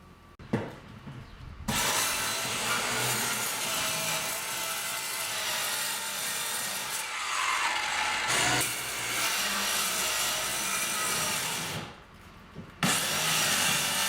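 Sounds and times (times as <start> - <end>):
power saw cutting wood: 1.7 - 12.0, 12.8 - 14.0.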